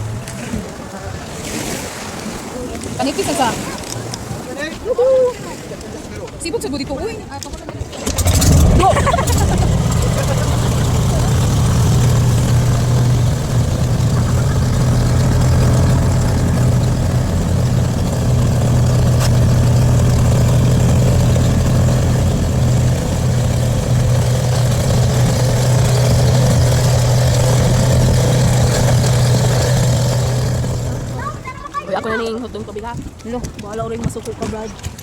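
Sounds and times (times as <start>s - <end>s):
vehicle engine running: 8.0s - 31.8s.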